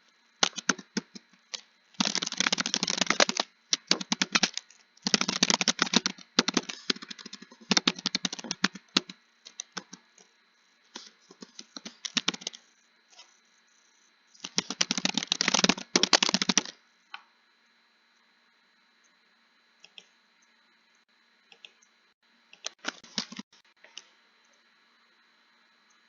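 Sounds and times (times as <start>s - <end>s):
typing on computer keyboard: 0.4s - 1.2s, 2.0s - 10.0s, 11.0s - 12.6s, 14.4s - 16.7s.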